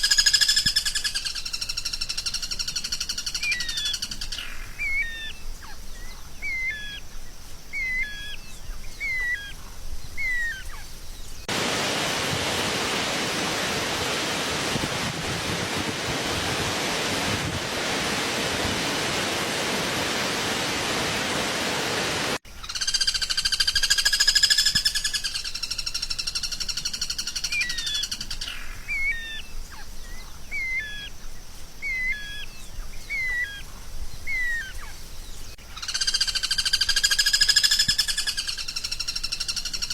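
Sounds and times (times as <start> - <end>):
steady hiss: 4.1 - 22.6.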